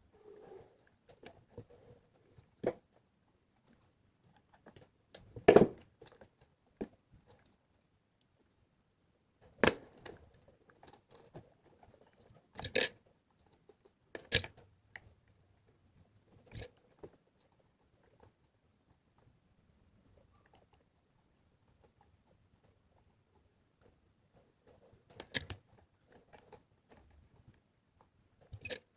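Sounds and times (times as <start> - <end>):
small parts clicking and knocking: 9.5 - 15.1, 25.0 - 27.6, 28.4 - 28.9.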